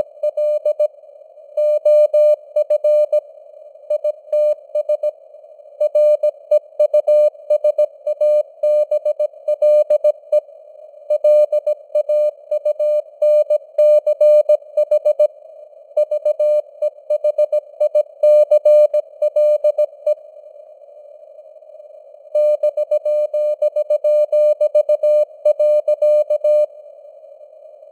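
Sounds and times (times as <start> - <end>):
morse code beep tone: 0.2 - 0.9, 5.8 - 10.2, 11.1 - 15.3, 16.0 - 20.2, 22.4 - 26.7.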